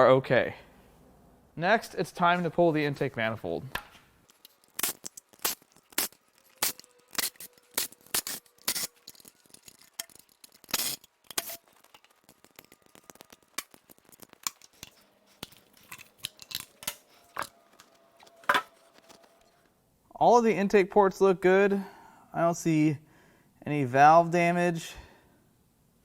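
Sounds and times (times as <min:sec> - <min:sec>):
hand tools clicking on metal: 0:04.3 - 0:17.5.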